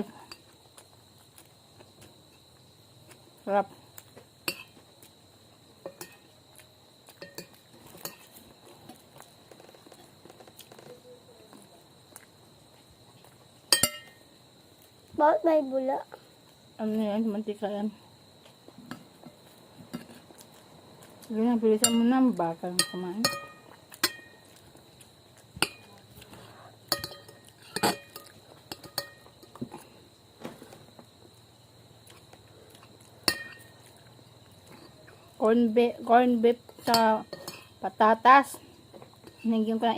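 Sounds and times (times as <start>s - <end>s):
cricket trill: 0.0s - 39.9s
cutlery clinking on a plate: 7.1s - 8.3s, 13.7s - 14.2s, 22.8s - 24.3s, 26.9s - 29.5s, 33.3s - 33.7s, 36.9s - 37.8s
faint steady high tone: 10.6s - 12.2s.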